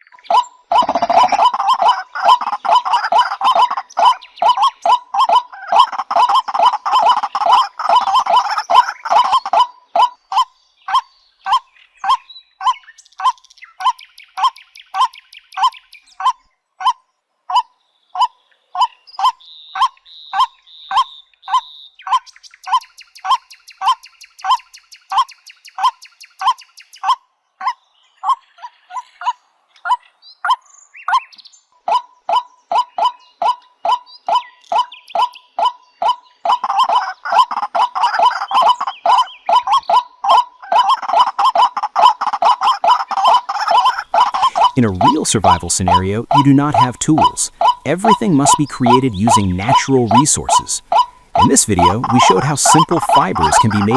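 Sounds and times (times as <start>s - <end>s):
waterhen calling: 0.0s - 17.6s, 31.9s - 53.9s.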